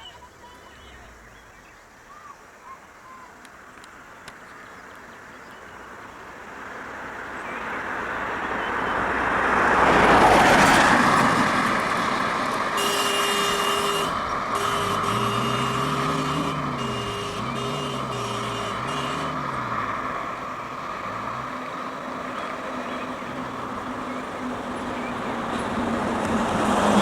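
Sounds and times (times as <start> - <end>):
motor vehicle passing: 9.9 - 27.0
steady tone with breaks: 12.5 - 21.6.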